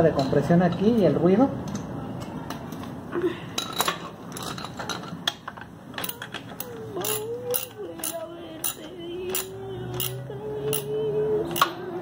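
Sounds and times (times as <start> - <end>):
metal tools clinking: 3.6 - 5.4, 6.0 - 10.9.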